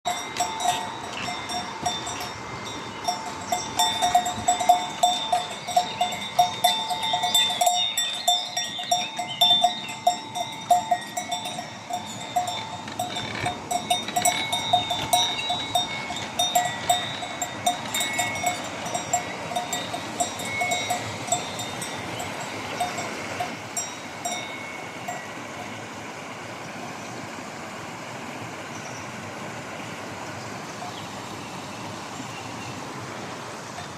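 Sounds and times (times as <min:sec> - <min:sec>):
livestock bells clanking: 0:00.0 - 0:26.0, 0:30.8 - 0:31.2, 0:33.7 - 0:33.9
stream rushing: 0:00.1 - 0:33.9.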